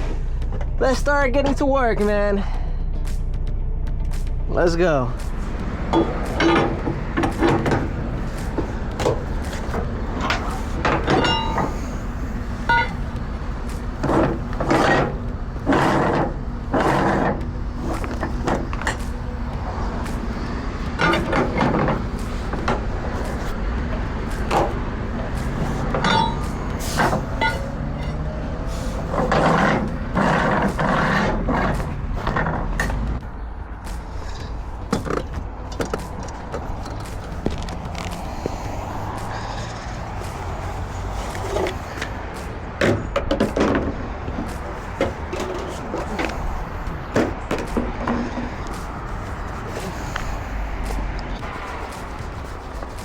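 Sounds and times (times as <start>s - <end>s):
diesel truck engine idling: 0.0s - 53.0s
metallic clanks and knocks: 5.9s - 19.3s, 19.9s - 28.3s, 29.0s - 33.2s, 34.4s - 37.2s, 42.8s - 46.4s.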